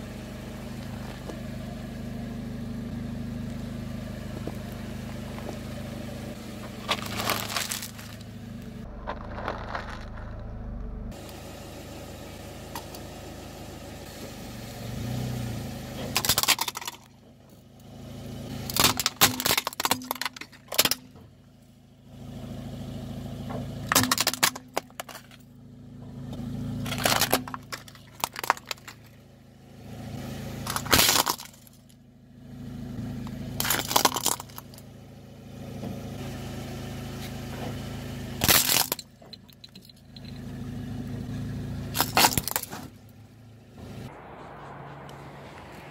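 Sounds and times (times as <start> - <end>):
car engine hum: 0.0 - 45.9
tyre crushing brittle objects: 6.8 - 8.3, 8.9 - 10.4, 26.8 - 29.1, 30.7 - 31.8, 33.6 - 34.8, 38.4 - 39.1, 41.9 - 43.0.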